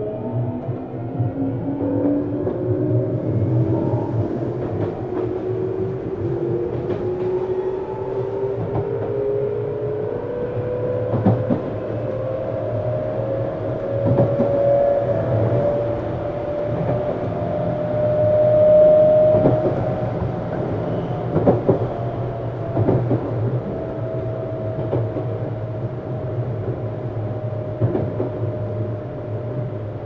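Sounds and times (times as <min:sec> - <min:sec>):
wheels rumbling on rail: 0:00.0 - 0:30.0
rail joint clicks: 0:10.9 - 0:12.1, 0:13.9 - 0:26.0, 0:27.6 - 0:29.7.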